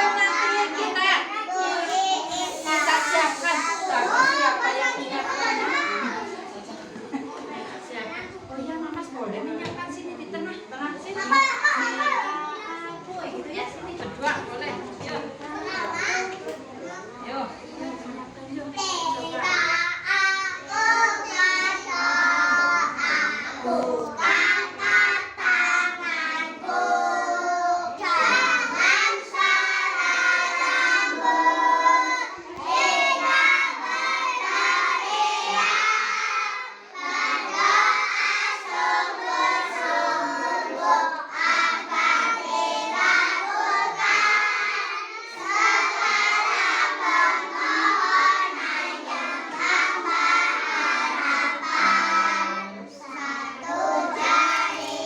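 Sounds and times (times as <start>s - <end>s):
children singing in chorus: 0.0s - 6.4s, 19.1s - 55.0s.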